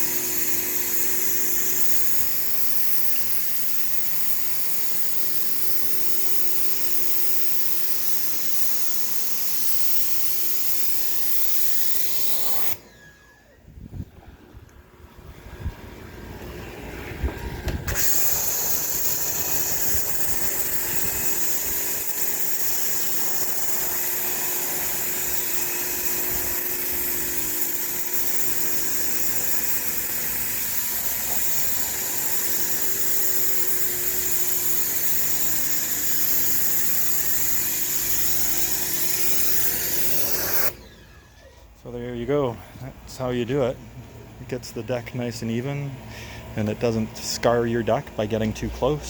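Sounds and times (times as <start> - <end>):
pressure washer spraying boards: 0.0 - 12.9, 17.7 - 41.5
pressure washer motor running: 0.0 - 13.4, 14.8 - 41.8.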